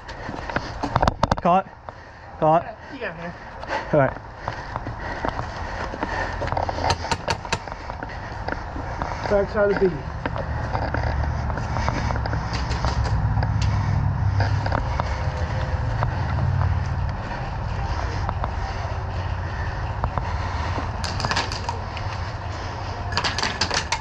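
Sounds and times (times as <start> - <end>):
rumble of gear handling: 10.2 - 18.6
sharp clicks: 21.0 - 22.1.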